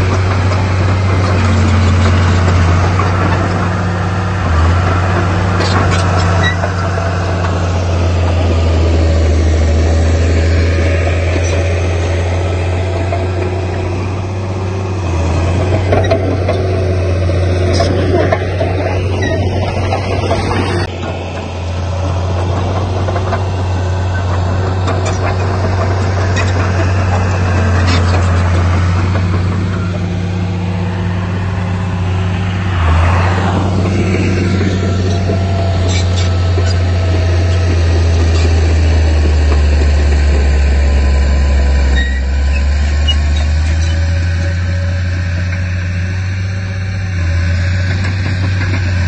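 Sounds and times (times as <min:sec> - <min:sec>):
diesel engine deep drone: 0:00.0 - 0:49.0.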